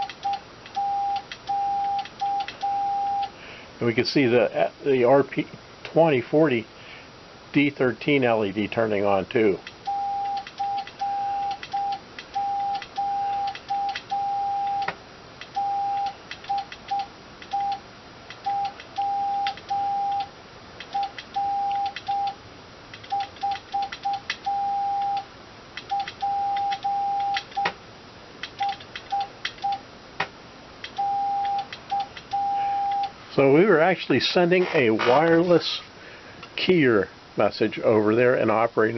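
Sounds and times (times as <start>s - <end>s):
morse code beeps: 0.0s - 3.3s, 9.9s - 14.9s, 15.6s - 17.8s, 18.4s - 20.3s, 20.9s - 22.4s, 23.1s - 25.3s, 25.9s - 27.7s, 31.0s - 33.1s
sharp keying clicks: 25.1s - 27.8s, 28.4s - 33.2s.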